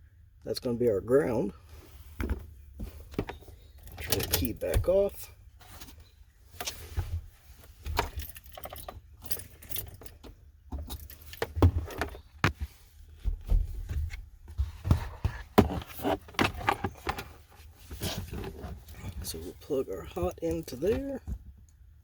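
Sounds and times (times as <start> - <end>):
keys jangling: 8.1 - 10.2.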